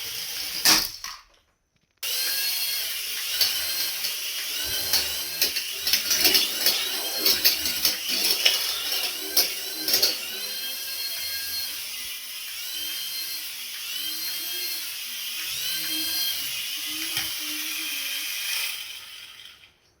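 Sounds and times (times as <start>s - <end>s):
electric toy motor whirring: 0.0s - 1.1s, 2.0s - 19.8s
plastic parts clicking and rattling: 3.2s - 10.5s.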